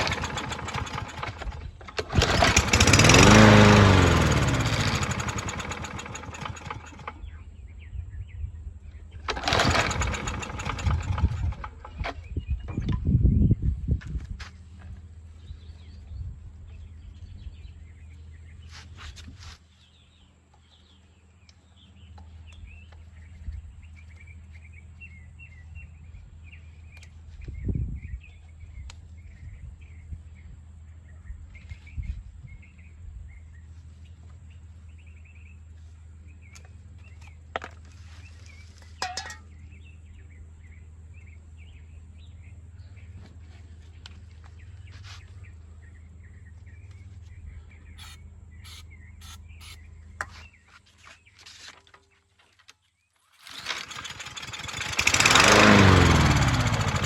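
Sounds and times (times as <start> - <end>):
birds chirping: 38.2 - 57.0.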